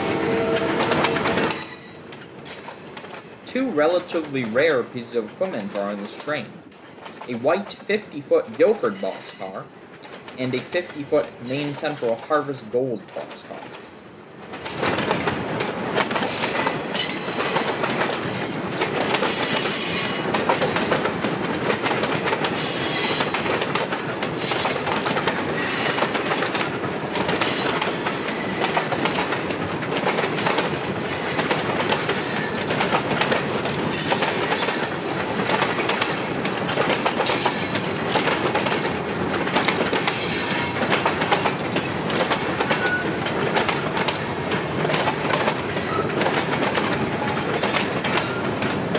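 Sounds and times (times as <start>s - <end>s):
train wheel squeal: 0.0s - 2.8s, 9.0s - 9.8s, 16.4s - 21.0s, 22.6s - 23.5s, 25.6s - 26.1s, 27.4s - 28.8s, 31.1s - 36.0s, 37.2s - 38.0s, 40.0s - 40.8s, 42.6s - 44.8s, 45.6s - 46.2s, 47.2s - 48.5s
train wheels clicking over rail joints: 0.0s - 48.9s.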